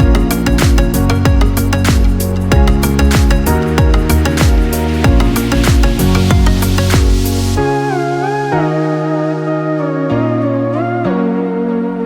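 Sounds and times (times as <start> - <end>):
electronic beat with bass hits: 0.0 - 7.8
held bass note: 0.0 - 9.6
gliding theremin-like lead melody: 5.1 - 12.0.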